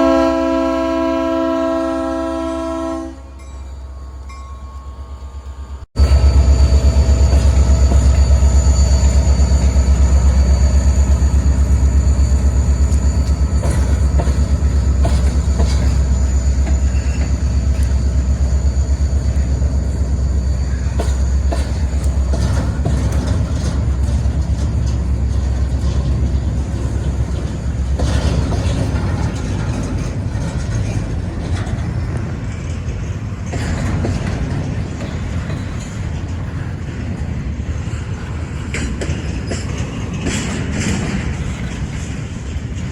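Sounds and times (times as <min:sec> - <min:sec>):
freight train rumble: 0:00.0 - 0:42.9
wheel squeal on rail: 0:01.6 - 0:36.9
wheels clicking over rail joints: 0:11.1 - 0:42.9.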